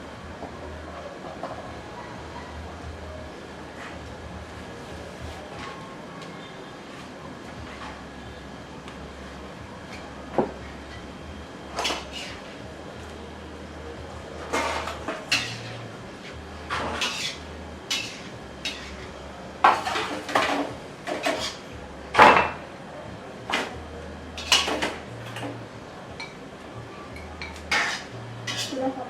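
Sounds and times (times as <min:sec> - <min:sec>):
utensils clinking against dishes: 0:11.7 - 0:12.6, 0:14.4 - 0:22.7, 0:23.5 - 0:23.8, 0:24.4 - 0:26.4, 0:27.0 - 0:29.0.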